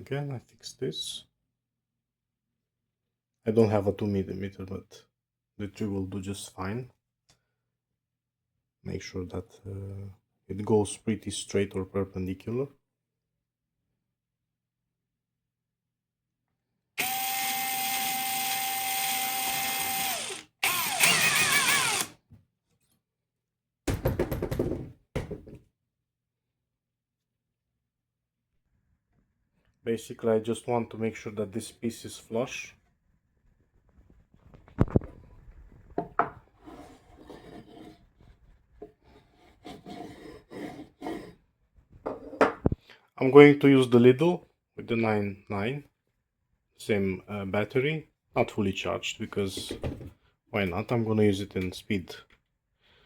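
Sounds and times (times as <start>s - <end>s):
cordless drill drilling: 17.0s - 22.2s
hand scraping cutting board: 36.6s - 41.4s.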